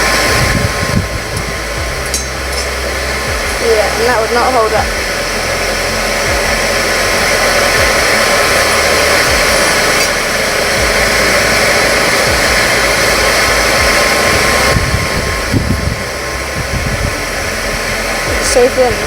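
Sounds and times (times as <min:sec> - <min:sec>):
low knocks: 0:00.0 - 0:05.2, 0:06.2 - 0:08.6, 0:09.3 - 0:17.5
forge roaring: 0:00.0 - 0:19.0.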